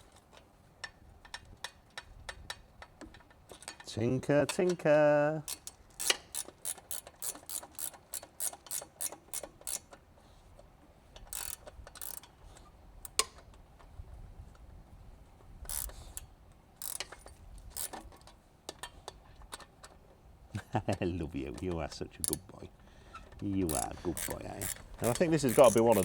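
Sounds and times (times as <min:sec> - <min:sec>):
ratchet wrench clicking: 0:05.5 - 0:09.9, 0:11.2 - 0:12.3, 0:15.7 - 0:18.0, 0:22.2 - 0:22.4, 0:23.7 - 0:26.0.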